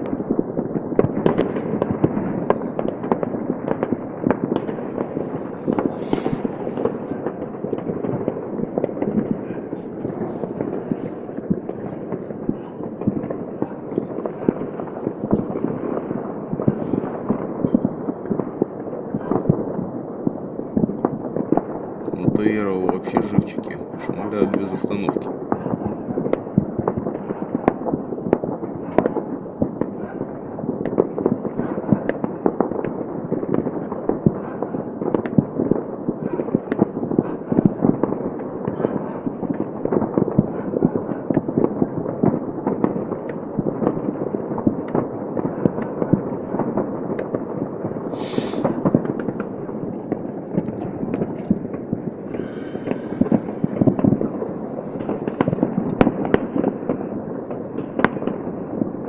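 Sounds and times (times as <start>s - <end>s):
fireworks and firecrackers crackling: 0.0s - 59.0s
short hiss: 5.4s - 7.2s, 48.1s - 48.8s.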